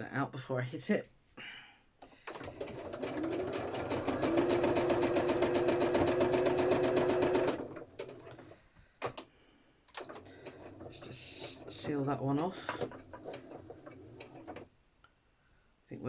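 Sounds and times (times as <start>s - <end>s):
sewing machine stitching: 2.2s - 9.2s, 10.0s - 14.7s.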